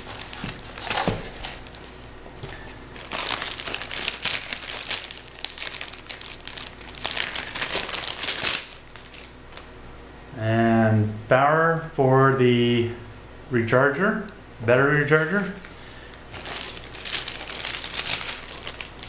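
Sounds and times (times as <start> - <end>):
packaging crinkling and rustling: 0.0 - 9.7, 16.3 - 19.0.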